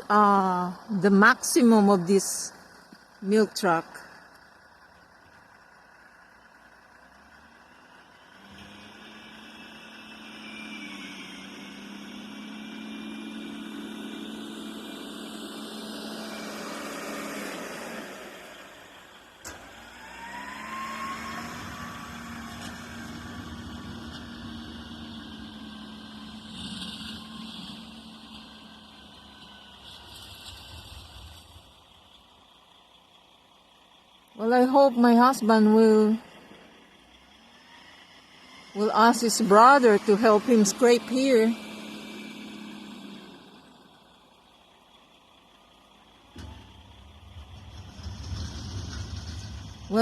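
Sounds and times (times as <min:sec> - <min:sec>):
tractor engine running: 0:00.0 - 0:50.0
snow scraping road: 0:19.7 - 0:31.9, 0:37.5 - 0:44.0, 0:47.3 - 0:50.0.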